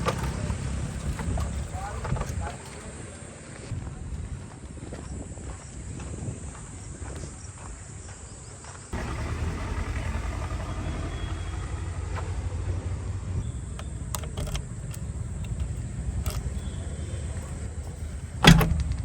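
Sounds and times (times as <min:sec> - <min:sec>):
diesel engine running: 0:00.0 - 0:03.7, 0:09.0 - 0:19.0.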